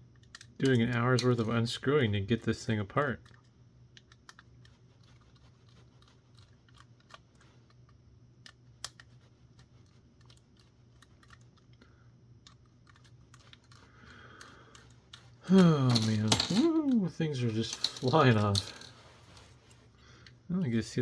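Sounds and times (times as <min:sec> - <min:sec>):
screwdriver clicking on small parts: 0:00.0 - 0:01.6, 0:03.2 - 0:04.8, 0:06.0 - 0:11.8, 0:12.4 - 0:18.9.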